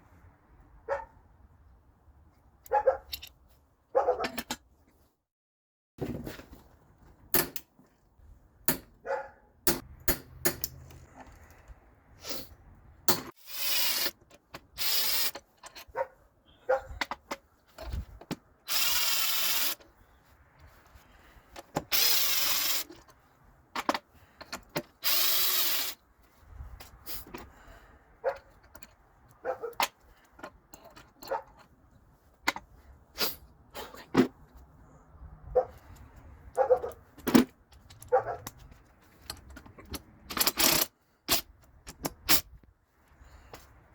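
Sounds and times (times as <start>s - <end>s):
metallic clicks and knocks: 9.7s - 11.5s
power driver spinning: 13.4s - 15.6s, 18.7s - 19.9s, 21.8s - 22.9s, 24.6s - 26.0s.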